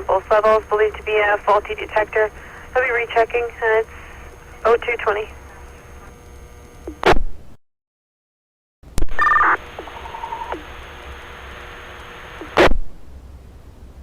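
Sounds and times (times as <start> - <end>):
open-channel radio hiss: 0.0 - 7.0, 9.1 - 12.8
radio click: 9.0 - 10.7, 11.9 - 12.8.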